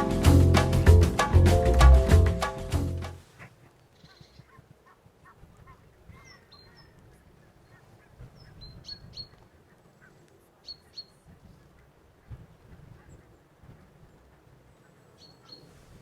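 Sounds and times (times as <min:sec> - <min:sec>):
faint bird chirps: 0:03.3 - 0:12.4, 0:13.0 - 0:16.0.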